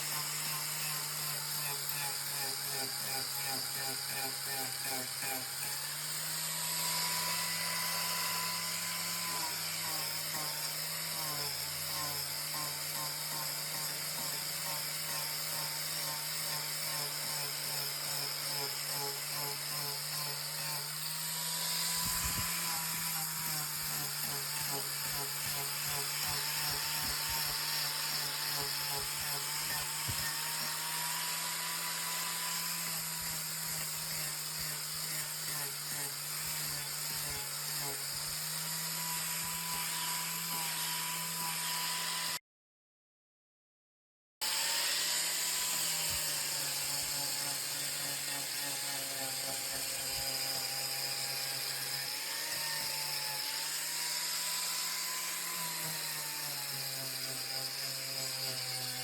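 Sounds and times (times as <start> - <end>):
angle grinder cutting wood: 0.0 - 42.4, 44.4 - 59.0.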